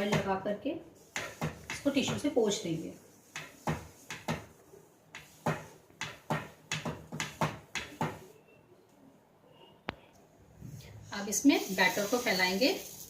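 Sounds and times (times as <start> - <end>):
tissue wiping a pan: 11.1 - 13.0.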